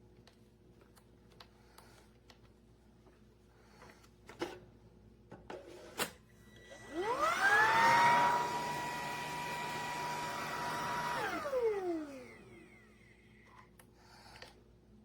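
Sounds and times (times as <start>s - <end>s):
vacuum cleaner motor whining: 6.4s - 13.3s.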